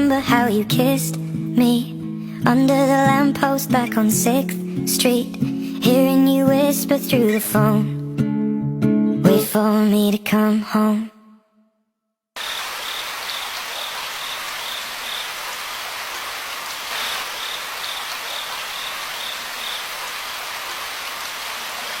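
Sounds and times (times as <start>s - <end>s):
insect chirping in pulses: 12.4s - 20.8s
waterfall rushing: 12.4s - 22.0s.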